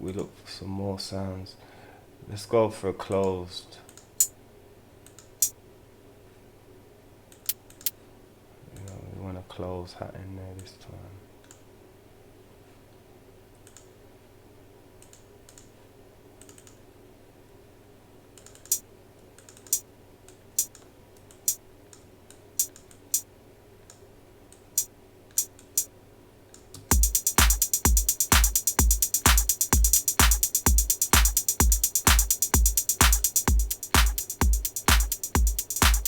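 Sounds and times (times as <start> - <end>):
programmed drum loop: 20.6 - 20.8, 26.8 - 36.0
closed hi-hat hits: 26.8 - 36.0.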